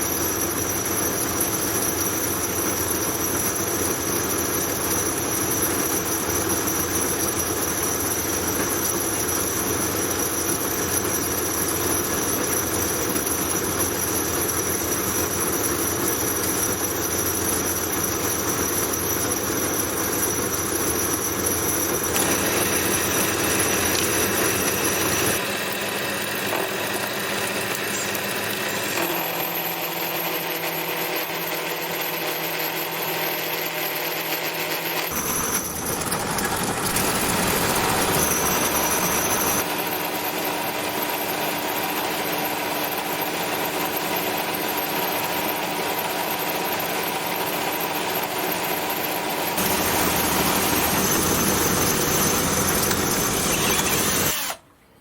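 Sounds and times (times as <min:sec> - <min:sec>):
milling machine cutting metal: 0:19.7 - 0:40.4, 0:49.5 - 0:54.6.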